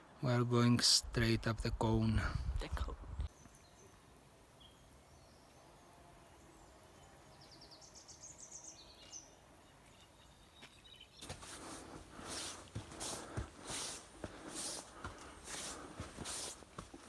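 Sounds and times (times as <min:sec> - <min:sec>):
footsteps on trail: 0:09.8 - 0:17.0.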